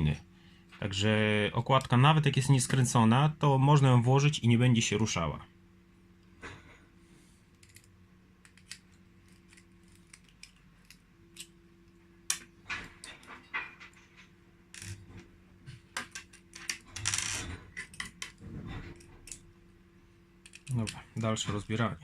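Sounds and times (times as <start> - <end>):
metal knife parts clicking: 7.6 - 11.5, 20.4 - 21.0.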